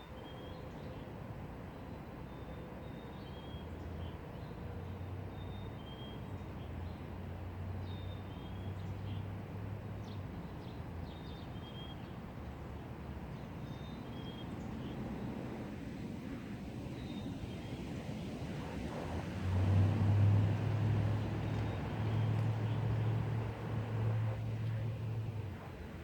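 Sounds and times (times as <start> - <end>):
wind through trees: 0.0 - 26.0.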